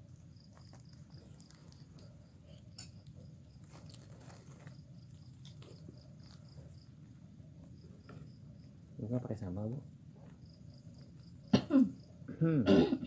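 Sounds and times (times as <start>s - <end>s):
cricket chirping: 0.0s - 13.0s
eating clicks and handling noises: 0.2s - 6.8s.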